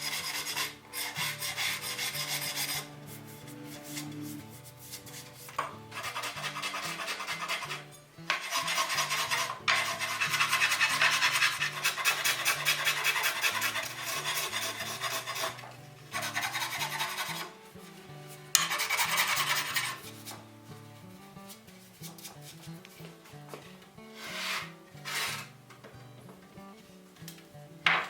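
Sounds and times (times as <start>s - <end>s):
rasp scraping wood: 0.0s - 20.4s, 24.1s - 25.5s
quiet background music: 0.0s - 28.0s.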